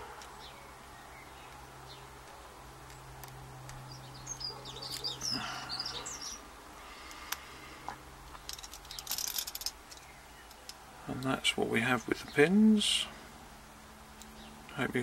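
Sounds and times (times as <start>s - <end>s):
bird chirping: 0.0s - 6.5s, 8.4s - 13.1s, 14.2s - 14.8s
faint steady hum: 0.0s - 15.0s.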